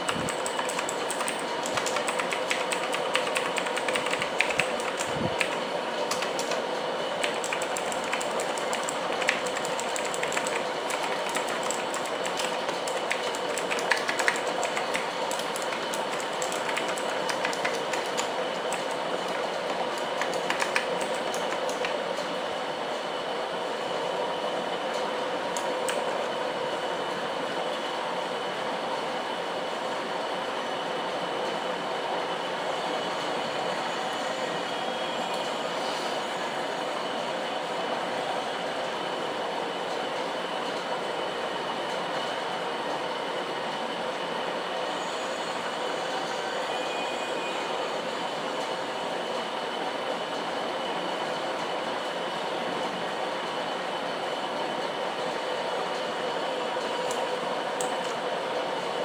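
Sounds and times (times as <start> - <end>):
mechanical keyboard clicks: 0.0 - 6.6, 7.2 - 22.0, 25.6 - 26.1.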